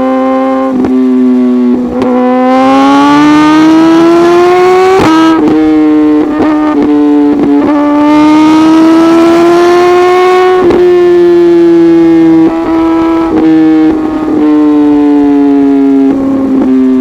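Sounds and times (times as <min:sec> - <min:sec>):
exhaust cracks: 0:00.0 - 0:17.0
motorcycle engine at high revs: 0:00.0 - 0:17.0.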